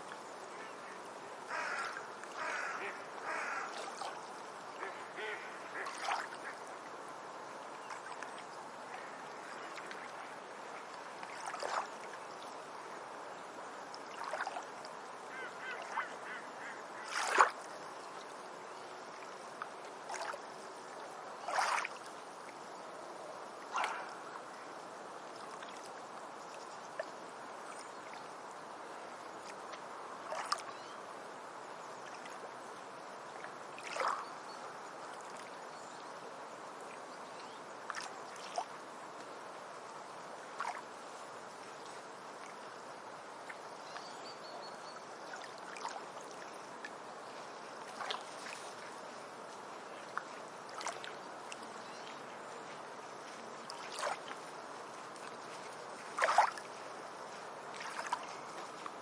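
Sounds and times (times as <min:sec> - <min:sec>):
background wash: 0:00.0 - 0:59.0
waterbird calls: 0:00.5 - 0:06.7, 0:15.3 - 0:17.6, 0:23.7 - 0:24.4.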